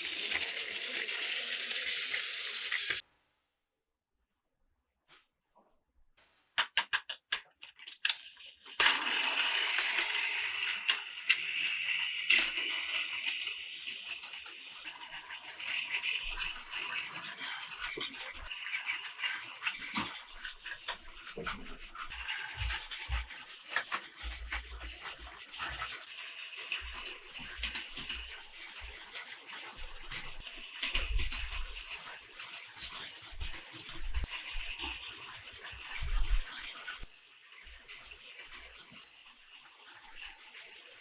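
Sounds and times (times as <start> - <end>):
toy train motor whirring: 0.0 - 3.0, 6.8 - 41.0
clicks from plastic track: 6.6 - 14.6, 19.2 - 37.0.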